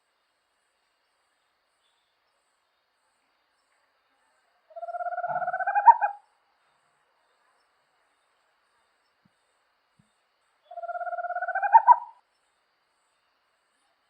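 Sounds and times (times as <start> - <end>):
owl quavering trill: 4.7 - 6.2, 10.7 - 12.2.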